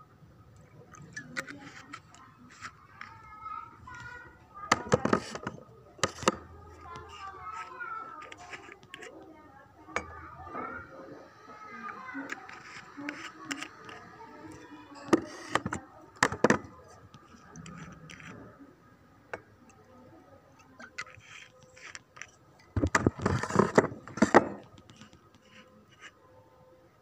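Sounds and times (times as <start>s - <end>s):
hard objects knocking: 3.8s - 9.1s, 15.0s - 18.4s, 20.8s - 24.8s.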